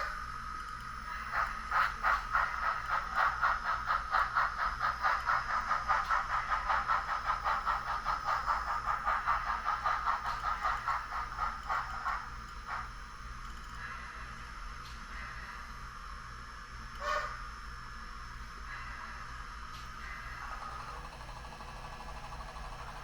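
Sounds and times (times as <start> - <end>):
rhythmic clicking: 0.0 - 13.8, 19.8 - 23.0
model railroad mechanism whine: 0.0 - 23.0.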